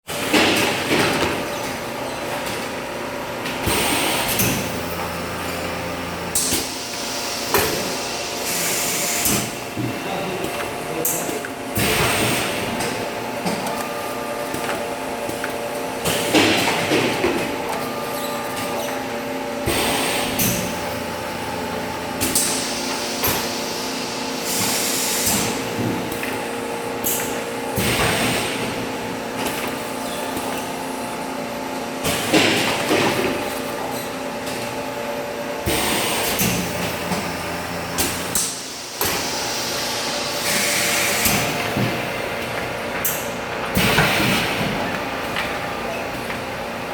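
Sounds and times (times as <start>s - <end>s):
packaging machine hum: 0.1s - 46.9s.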